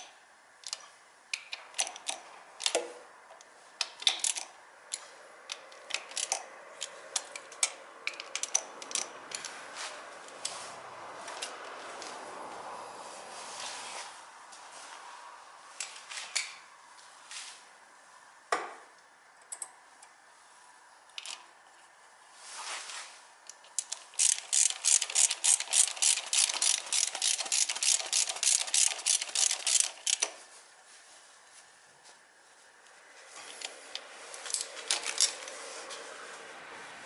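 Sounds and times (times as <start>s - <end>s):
ratchet wrench clicking: 0.0s - 2.8s, 3.8s - 9.6s, 23.5s - 30.4s, 33.9s - 35.5s.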